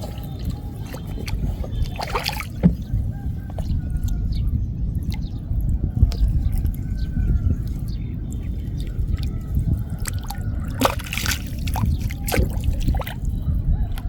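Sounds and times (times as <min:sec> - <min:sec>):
water splash: 0:00.8 - 0:02.8, 0:10.0 - 0:13.2.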